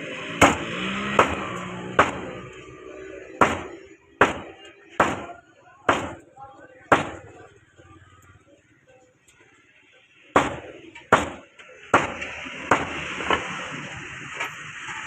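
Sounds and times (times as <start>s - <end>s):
heavy chopping strikes: 0.3s - 2.6s, 3.3s - 6.3s, 6.9s - 7.4s, 10.4s - 13.5s.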